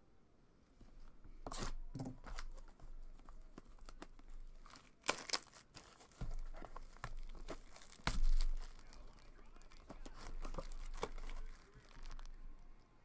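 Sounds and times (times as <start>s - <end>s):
wrapper tearing and rustling: 2.4s - 12.4s.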